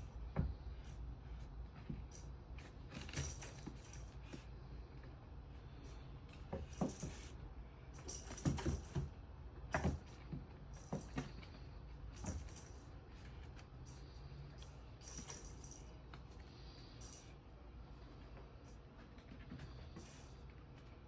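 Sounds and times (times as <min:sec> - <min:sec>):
cat toy jingling and rattling: 0:02.0 - 0:04.4, 0:06.6 - 0:09.1, 0:09.8 - 0:16.0.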